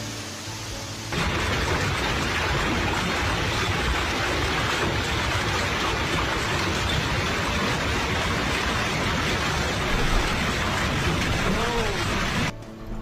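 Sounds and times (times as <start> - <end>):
heavy rain in strong wind: 0.0 - 12.5.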